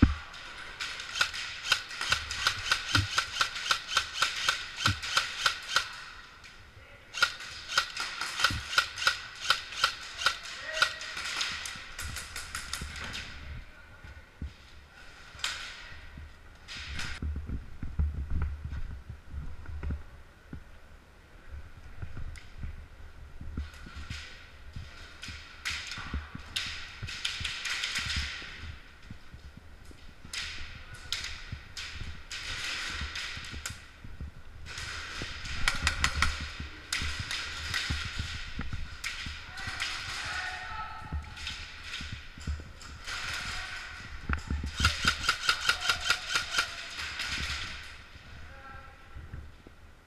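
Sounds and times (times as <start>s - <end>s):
airsoft rifle rapid fire: 0.8s - 6.0s, 7.2s - 11.4s, 44.7s - 46.9s.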